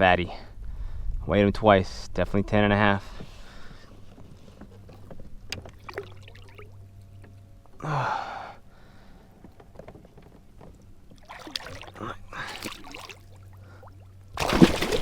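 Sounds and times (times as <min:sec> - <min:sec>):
steady low hum: 0:00.0 - 0:15.0
rustling splashes: 0:11.1 - 0:15.0.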